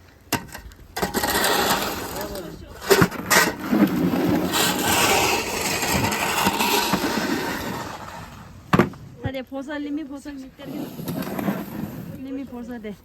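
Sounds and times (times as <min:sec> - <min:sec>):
snow shovel scraping snow: 0:01.0 - 0:08.7, 0:10.5 - 0:13.0.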